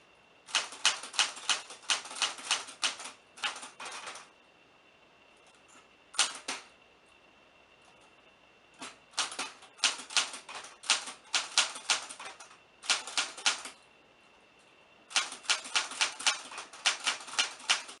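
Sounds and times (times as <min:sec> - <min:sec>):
typewriter keys clacking: 0:09.2 - 0:13.7, 0:15.1 - 0:18.0.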